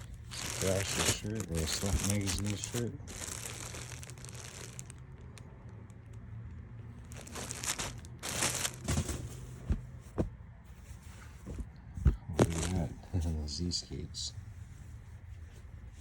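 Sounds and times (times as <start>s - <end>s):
t-shirts rustling and crinkling: 0.0s - 6.2s, 7.0s - 10.2s, 12.4s - 13.0s.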